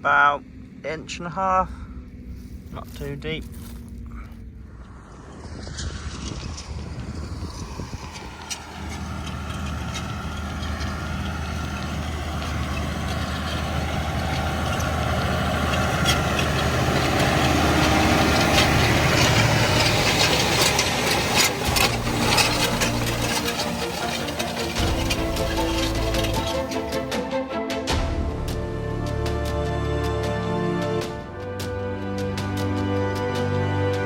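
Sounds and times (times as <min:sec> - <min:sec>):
tractor engine running: 0:02.0 - 0:32.8
clicks and rattles: 0:07.4 - 0:27.2.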